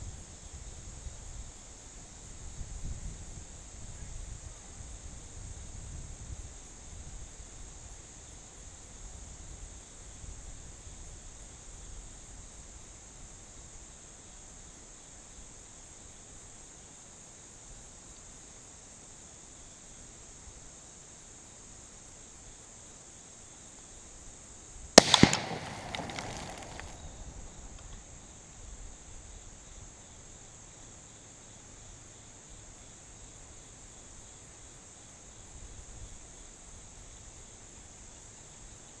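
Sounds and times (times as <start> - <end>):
insects chirring: 21.4 - 39.0
rifle shot echoing: 25.0 - 27.4.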